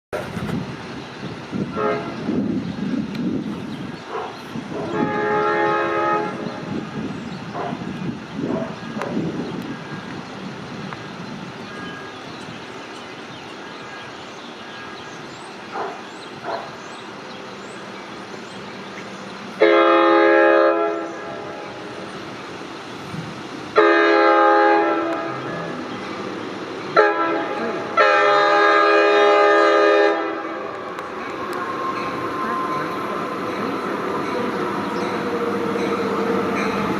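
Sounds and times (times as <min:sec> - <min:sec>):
train rumbling: 0:00.1 - 0:36.9
locomotive horn blasts: 0:01.7 - 0:02.4, 0:04.8 - 0:06.7, 0:19.6 - 0:21.7, 0:23.8 - 0:25.9, 0:27.0 - 0:31.0.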